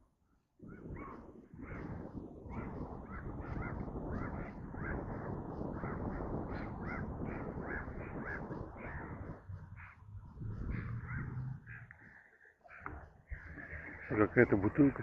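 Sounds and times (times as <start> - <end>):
low rumble: 3.0 - 12.0.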